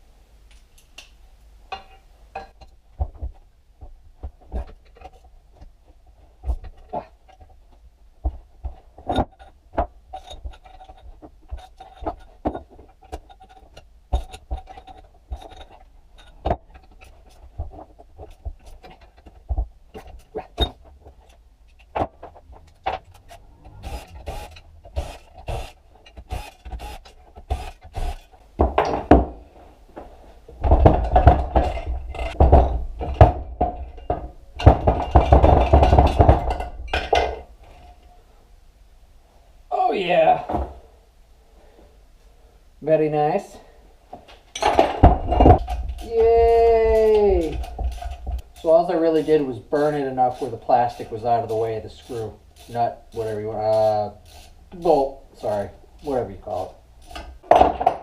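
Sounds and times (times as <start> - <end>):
dense rattling and scraping: 2.6 - 38.0, 44.5 - 46.2
metallic clicks of hand tools: 45.6 - 54.9.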